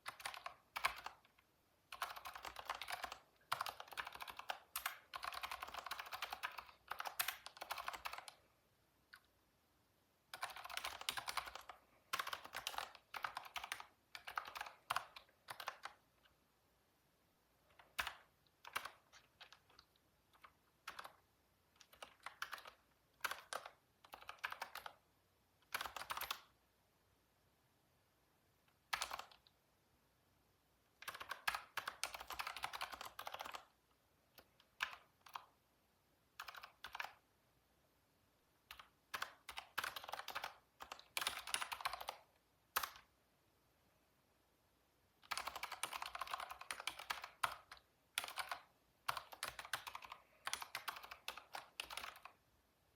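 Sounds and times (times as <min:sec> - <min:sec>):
computer keyboard typing: 0:00.0 - 0:08.5, 0:10.3 - 0:16.4, 0:17.6 - 0:25.0, 0:25.6 - 0:26.6, 0:28.7 - 0:29.5, 0:31.0 - 0:35.6, 0:36.3 - 0:37.2, 0:38.6 - 0:43.1, 0:45.2 - 0:52.4.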